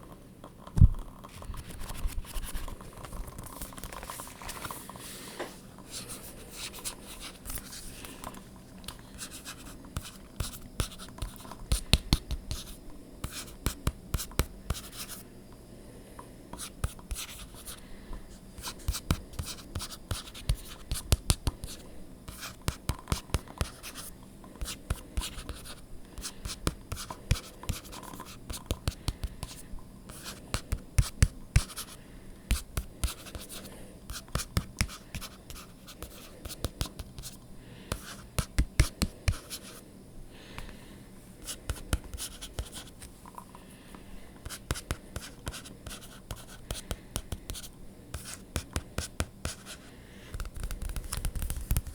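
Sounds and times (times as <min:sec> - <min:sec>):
soft scratching: 0:01.0 - 0:11.5, 0:50.4 - 0:51.9.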